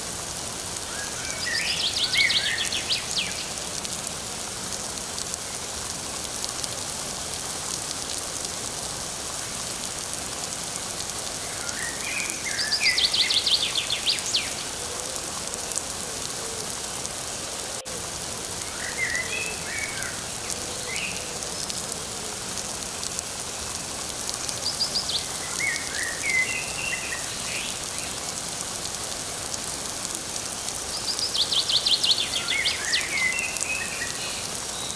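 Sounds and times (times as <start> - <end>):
light rain falling: 0.0 - 34.9
songbirds singing: 0.8 - 3.6, 11.4 - 14.8, 18.6 - 21.3, 24.5 - 28.4, 30.8 - 34.9.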